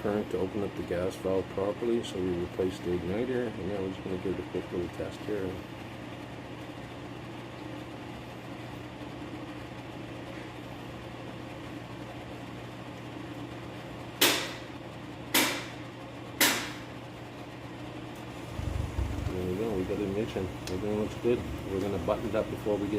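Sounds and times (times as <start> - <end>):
sharp knocks: 15.3 - 15.7
low hum: 18.2 - 22.9.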